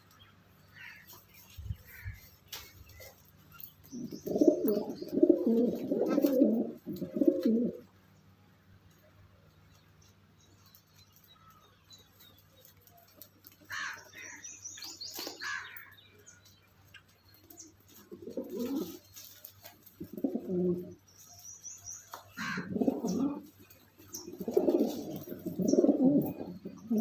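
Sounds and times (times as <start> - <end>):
pigeons cooing: 3.8 - 7.9, 17.8 - 21.1, 22.4 - 27.0.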